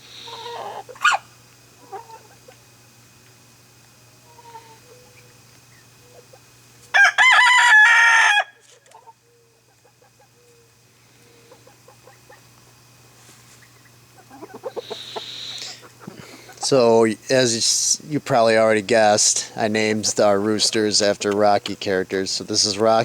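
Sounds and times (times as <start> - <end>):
chickens clucking: 0.0 - 2.8, 4.1 - 6.6, 8.8 - 10.6, 11.2 - 17.1, 19.5 - 23.0
rooster crowing: 6.9 - 8.6.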